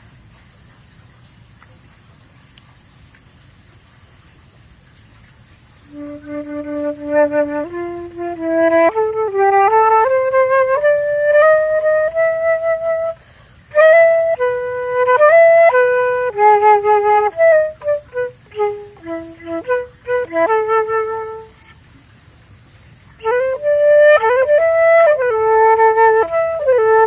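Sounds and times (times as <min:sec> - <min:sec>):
solo flute melody: 0:05.9 - 0:21.8, 0:23.2 - 0:27.0.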